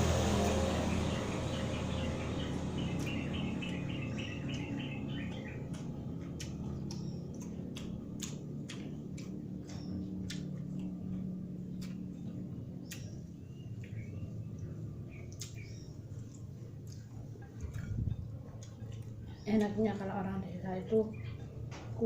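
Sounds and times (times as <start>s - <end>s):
bird chirping: 0.0s - 8.1s, 9.2s - 17.1s
steady low hum: 0.0s - 22.0s
person chewing food: 5.6s - 19.3s.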